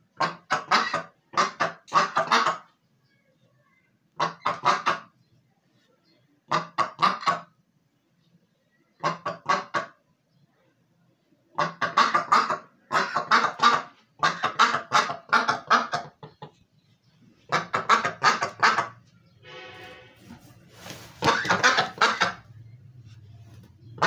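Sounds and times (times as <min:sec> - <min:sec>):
duck quacking: 0:00.2 - 0:02.7, 0:04.2 - 0:05.1, 0:06.5 - 0:07.5, 0:09.0 - 0:10.0, 0:11.6 - 0:16.5, 0:17.5 - 0:20.4, 0:21.2 - 0:22.5.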